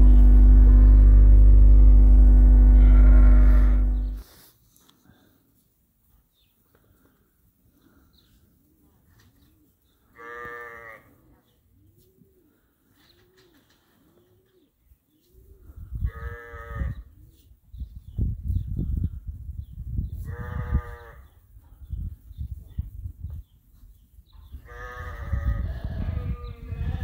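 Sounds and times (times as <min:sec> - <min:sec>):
low rumbling thumping noise: 0:00.0 - 0:04.2
sheep bleating: 0:02.3 - 0:04.2, 0:10.2 - 0:11.2, 0:16.1 - 0:17.0, 0:24.7 - 0:27.0.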